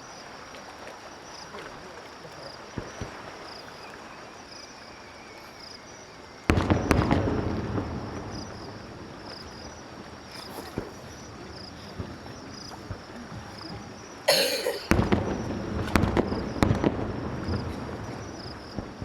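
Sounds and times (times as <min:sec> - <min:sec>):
insects chirping: 0:00.0 - 0:19.0
faint firework pops: 0:06.5 - 0:07.7, 0:14.9 - 0:19.0
firework shells bursting: 0:14.3 - 0:16.9
firework crackling: 0:14.3 - 0:19.0.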